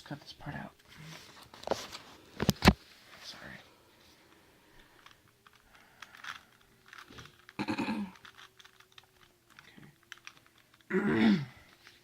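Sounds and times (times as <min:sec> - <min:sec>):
puzzle cube clicking: 0:05.0 - 0:10.9.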